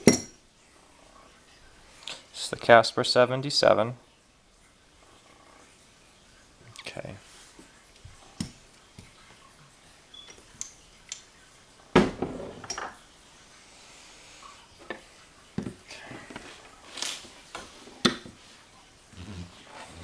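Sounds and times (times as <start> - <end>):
metal tools clicking and clinking: 0.0 - 0.4, 10.2 - 11.3, 12.6 - 13.0.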